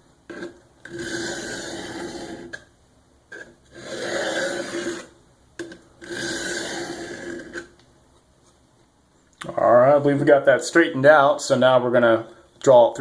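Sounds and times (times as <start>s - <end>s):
knife blade scraping on a hone: 0.3s - 2.6s, 3.3s - 5.2s, 6.0s - 7.7s.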